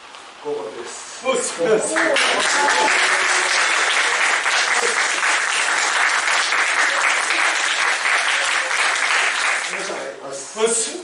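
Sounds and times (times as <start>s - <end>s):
people applauding: 1.5s - 10.1s.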